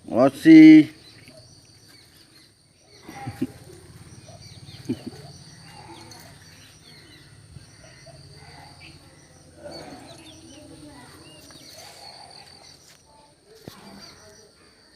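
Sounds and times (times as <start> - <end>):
small birds chirping: 0.0 - 14.9.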